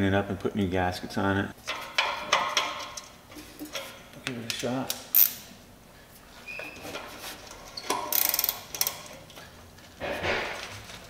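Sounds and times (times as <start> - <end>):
ratchet wrench clicking: 5.1 - 5.4, 8.1 - 9.0.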